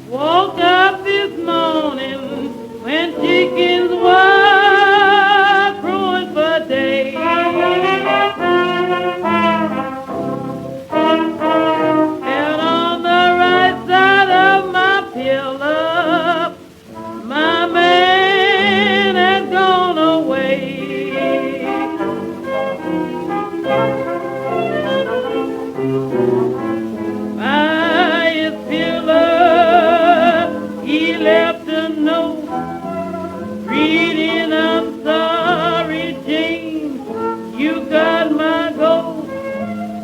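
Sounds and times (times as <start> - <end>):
woman singing blues: 0.0 - 24.7, 26.8 - 40.0
small jazz band: 0.0 - 40.0
brass horn lines: 5.7 - 15.8, 18.6 - 31.7.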